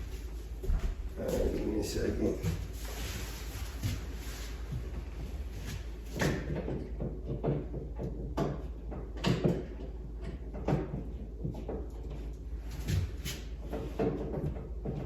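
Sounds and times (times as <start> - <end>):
steady low hum: 0.0 - 15.0
knocks and clunks on wall mount: 4.8 - 15.0.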